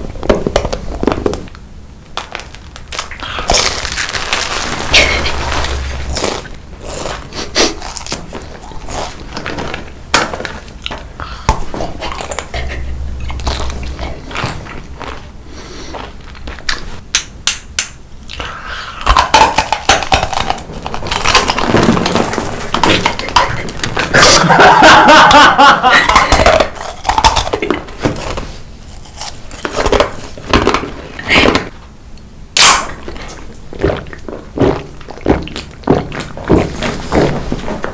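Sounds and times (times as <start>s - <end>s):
food being crunched: 0.6s - 11.0s, 19.0s - 24.5s, 26.1s - 31.2s.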